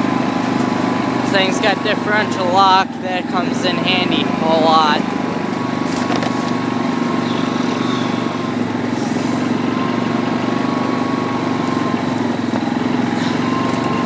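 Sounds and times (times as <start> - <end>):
atv engine running: 0.0 - 14.0.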